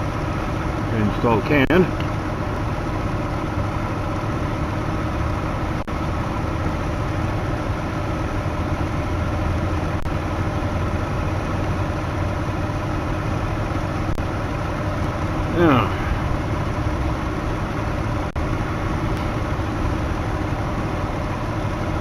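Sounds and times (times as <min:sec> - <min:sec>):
air conditioning running: 0:00.0 - 0:22.0
car engine idling: 0:00.0 - 0:22.0.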